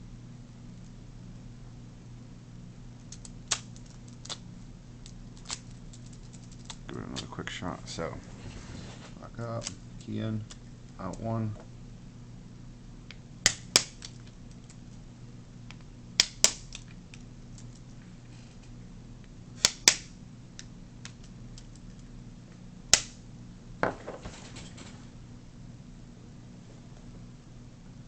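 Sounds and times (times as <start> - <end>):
soft clack and rattle: 23.9 - 25.1.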